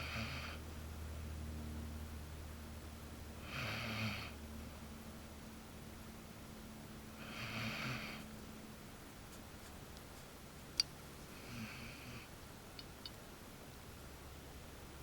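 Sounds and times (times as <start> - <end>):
dog snoring: 0.0 - 0.6, 3.4 - 4.4, 7.2 - 8.2, 11.3 - 12.3.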